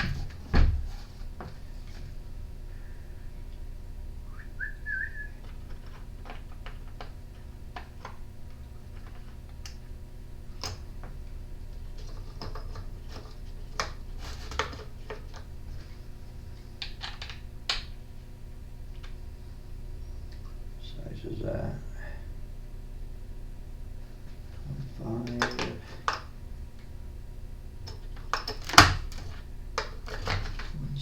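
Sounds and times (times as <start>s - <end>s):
steady low hum: 0.0s - 31.0s
short wavering whistle: 4.2s - 5.4s.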